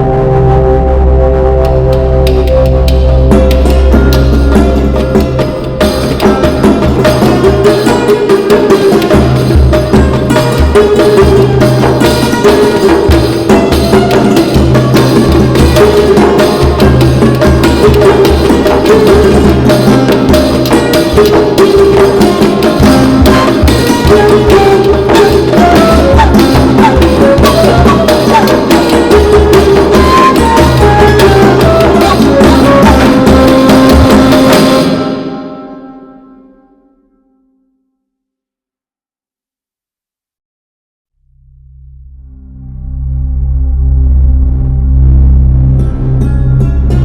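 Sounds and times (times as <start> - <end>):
folk music with drum rhythm: 1.5 - 35.7.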